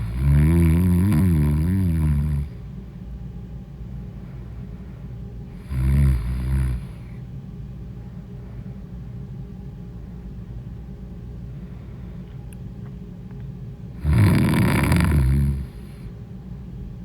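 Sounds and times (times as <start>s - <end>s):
woman snoring: 0.0s - 2.6s, 5.6s - 7.1s, 14.0s - 16.0s.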